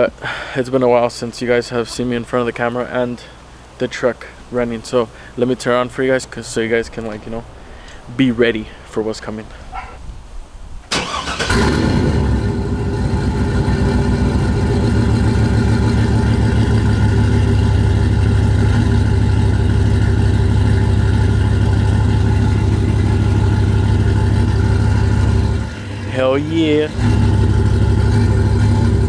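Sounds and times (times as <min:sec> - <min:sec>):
engine idling rough with misfire: 0:10.9 - 0:29.0.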